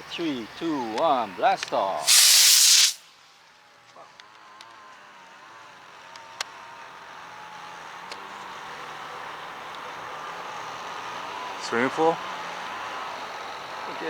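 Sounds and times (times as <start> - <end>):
rocket motor whooshing hiss: 2.0 - 3.3.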